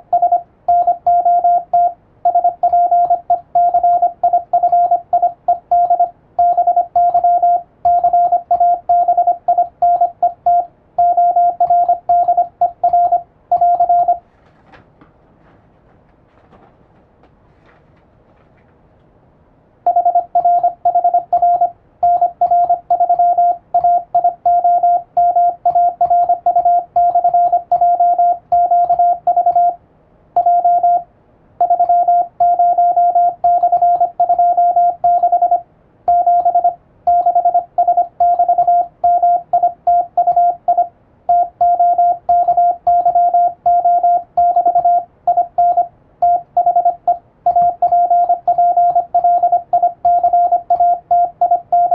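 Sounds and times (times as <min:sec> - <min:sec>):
morse code tone: 0:00.0 - 0:14.3, 0:19.9 - 0:29.8, 0:30.4 - 0:51.9.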